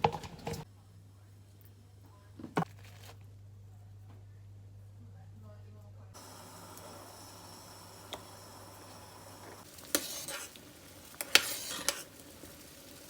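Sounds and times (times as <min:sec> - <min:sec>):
utensil scraping and clinking: 0:09.4 - 0:12.2.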